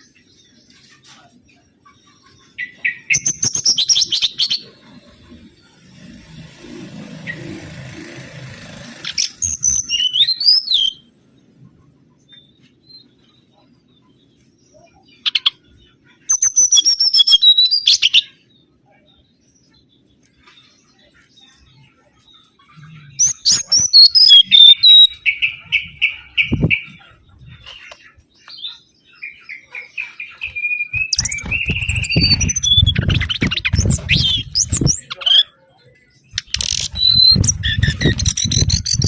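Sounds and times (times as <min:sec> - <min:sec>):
bird whistling song: 0:02.6 - 0:04.6, 0:09.1 - 0:11.1, 0:16.3 - 0:18.3, 0:23.2 - 0:27.0, 0:30.1 - 0:35.5, 0:36.3 - 0:39.0.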